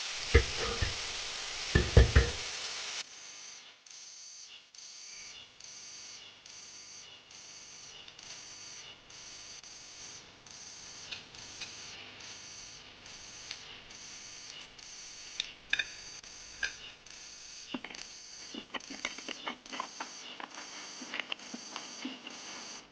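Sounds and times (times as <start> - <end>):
sharp clicks and knocks: 0.2 - 1.1, 1.7 - 2.4, 16.6 - 16.8.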